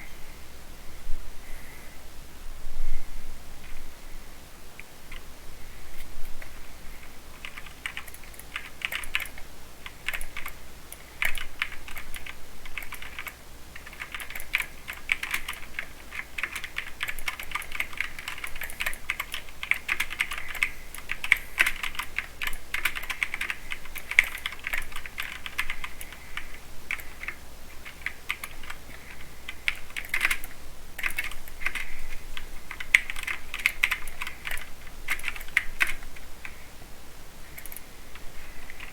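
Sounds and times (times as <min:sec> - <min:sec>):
fast typing on mechanical keyboard: 0:07.3 - 0:36.6, 0:37.6 - 0:38.9.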